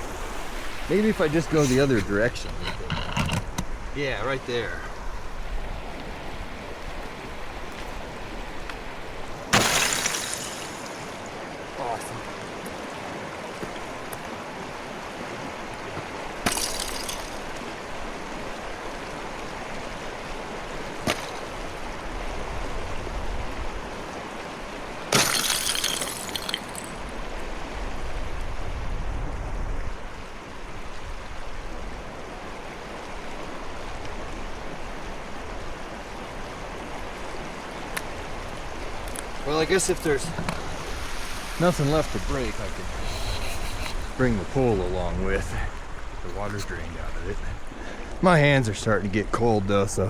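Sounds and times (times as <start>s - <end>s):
river water flowing: 0.0s - 50.0s
ice cracking and shattering: 9.4s - 11.2s, 16.4s - 17.6s, 21.0s - 21.6s, 25.1s - 27.0s, 39.1s - 44.5s.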